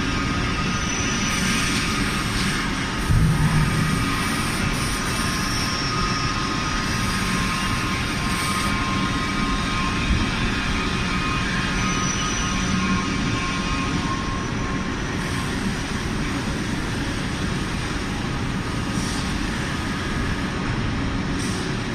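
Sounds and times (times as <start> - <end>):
bending machine running: 0.6 - 9.6.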